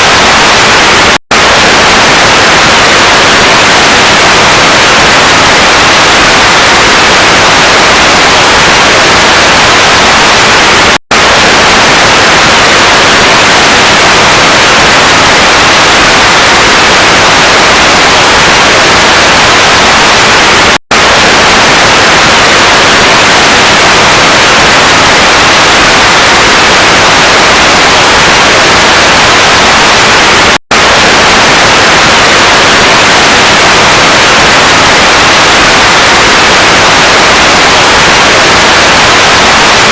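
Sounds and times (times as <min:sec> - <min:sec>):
static hiss: 0:00.0 - 0:39.9.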